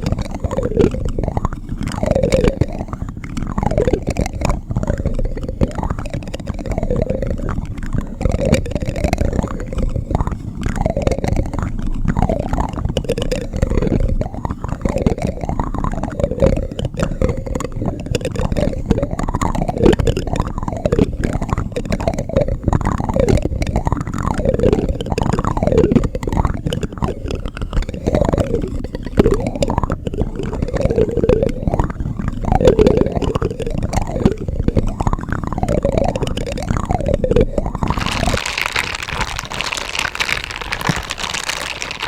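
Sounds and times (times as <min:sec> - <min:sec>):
spoon scraping and rubbing: 0:37.9 - 0:42.0.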